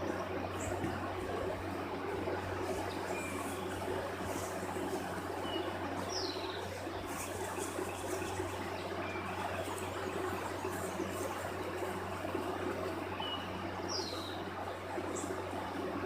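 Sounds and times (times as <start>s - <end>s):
constant hiss: 0.0s - 16.0s
bird chirps: 5.4s - 9.8s.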